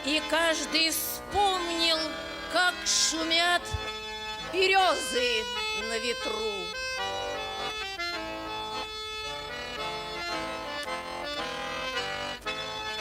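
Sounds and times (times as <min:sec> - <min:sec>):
person singing folk song: 0:00.0 - 0:06.8
button accordion playing chords: 0:00.0 - 0:13.0.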